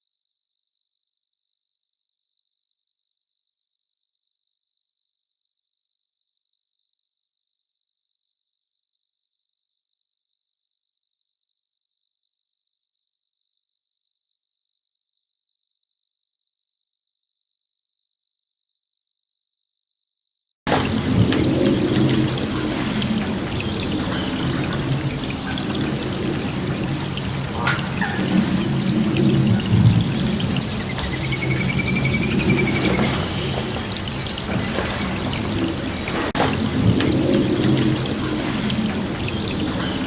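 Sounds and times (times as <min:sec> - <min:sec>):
rushing water: 0:20.7 - 0:40.0.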